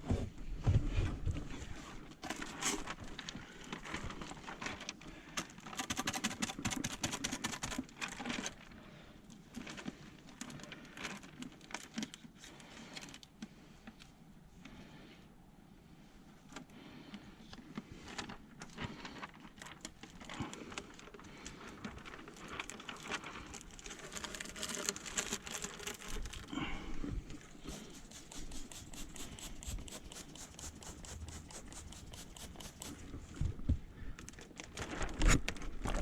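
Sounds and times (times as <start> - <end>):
plastic film crinkling: 19.1 - 26.6, 27.4 - 33.1.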